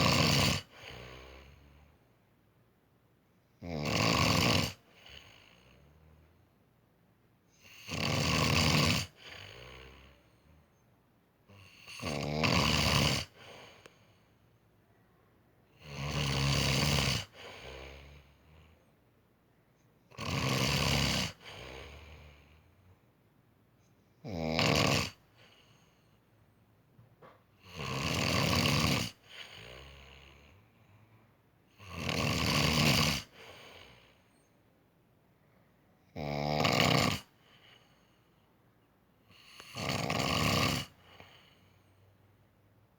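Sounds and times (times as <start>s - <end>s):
loud rhythmic snoring: 0.0s - 2.1s, 3.6s - 6.4s, 7.5s - 10.8s, 11.5s - 14.4s, 15.7s - 18.9s, 20.1s - 23.0s, 24.2s - 26.2s, 27.2s - 34.5s, 36.0s - 38.4s, 39.2s - 42.2s
soft breath: 13.3s - 15.6s, 37.4s - 39.6s, 40.9s - 42.6s.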